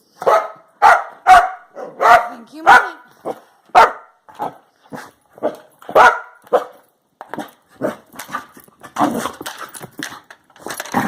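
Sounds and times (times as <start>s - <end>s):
dog barking: 0.2s - 4.6s, 5.4s - 6.8s.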